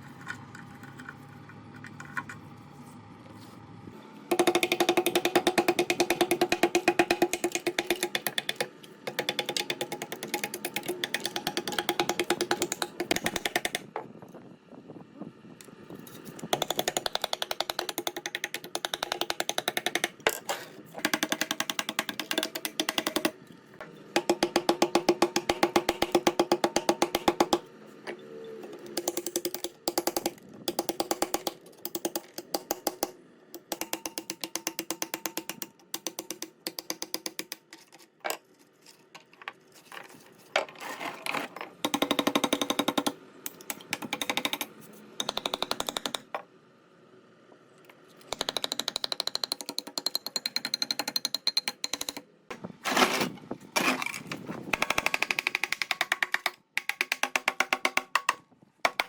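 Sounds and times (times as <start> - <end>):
power tool hammering: 4.3 - 14.1, 16.0 - 37.9, 41.8 - 46.4, 48.2 - 59.0.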